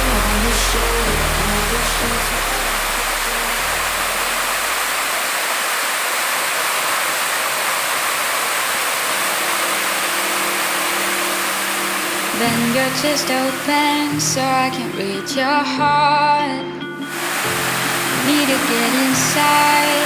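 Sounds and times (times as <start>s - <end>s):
backing music low notes: 0.0s - 4.9s
low held tone: 0.0s - 5.0s
steady rushing noise: 0.0s - 13.8s, 17.1s - 20.0s.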